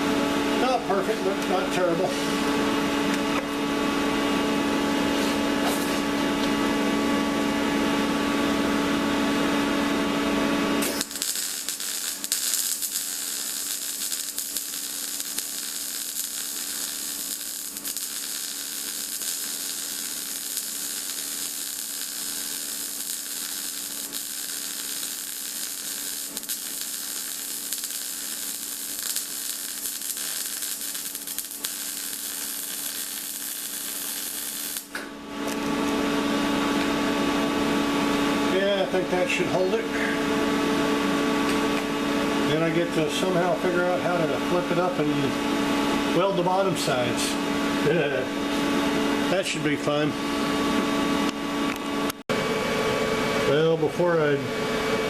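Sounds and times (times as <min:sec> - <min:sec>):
machine hum: 0:00.0 - 0:55.0
welder crackling sizzle: 0:10.6 - 0:35.7.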